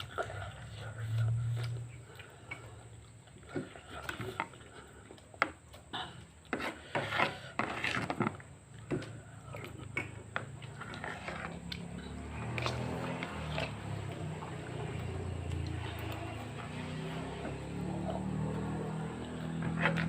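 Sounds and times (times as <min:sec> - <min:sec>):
utensil scraping a dish: 0:06.5 - 0:09.2, 0:09.8 - 0:14.1.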